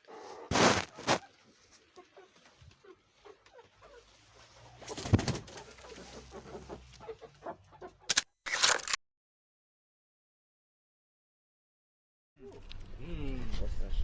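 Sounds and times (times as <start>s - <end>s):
chickens clucking softly: 0.0s - 8.1s.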